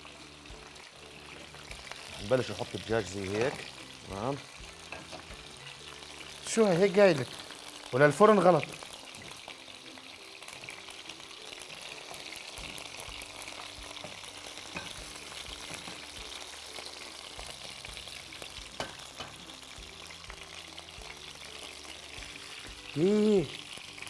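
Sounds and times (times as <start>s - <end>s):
chicken frying in hot oil: 0.0s - 24.0s.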